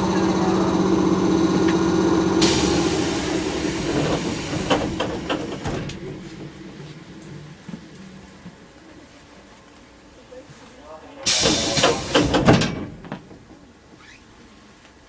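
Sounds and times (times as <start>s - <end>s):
electric train humming drone: 0.0s - 9.6s
hiss of air: 2.4s - 6.0s, 11.3s - 12.4s.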